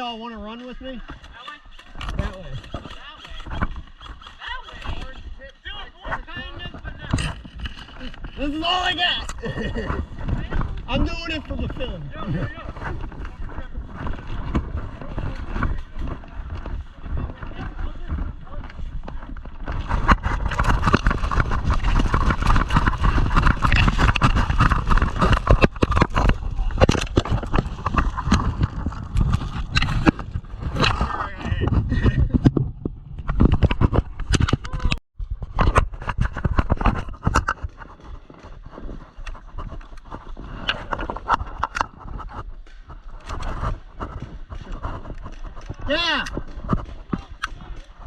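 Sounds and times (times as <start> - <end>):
running footsteps: 0.0 - 32.5, 33.3 - 48.0
gear rattling: 1.0 - 32.1
wind noise on microphone: 1.0 - 48.0.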